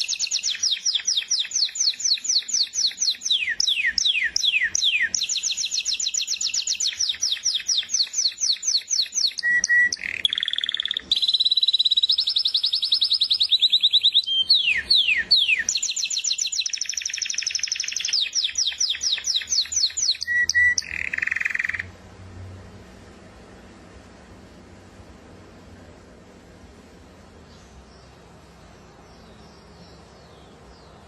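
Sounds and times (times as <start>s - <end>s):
canary singing: 0.0s - 21.9s.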